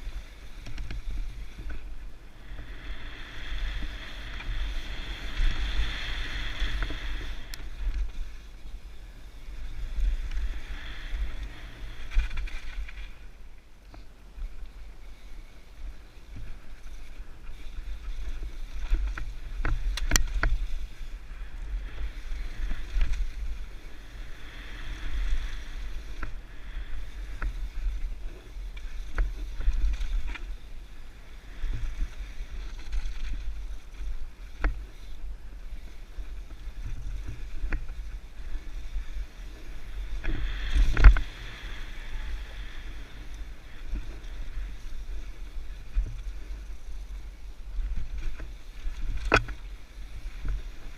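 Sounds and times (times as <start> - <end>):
bike rumble and tyre hiss: 0.0 - 50.9.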